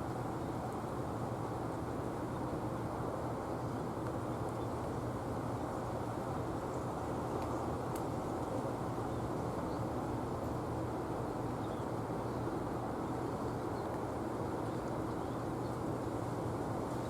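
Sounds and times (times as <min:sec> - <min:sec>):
small birds chirping: 0:14.6 - 0:15.9.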